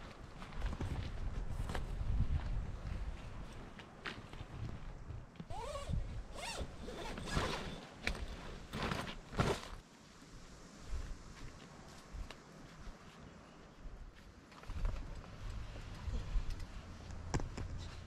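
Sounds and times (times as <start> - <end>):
zipper pulled: 5.5 - 9.8.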